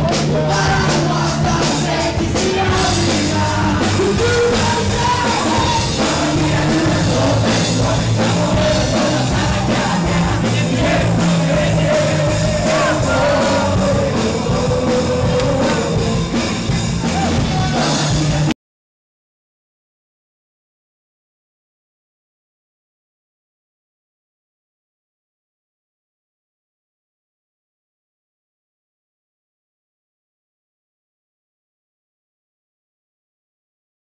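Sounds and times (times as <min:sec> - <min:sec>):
rock song with singing: 0:00.0 - 0:18.5.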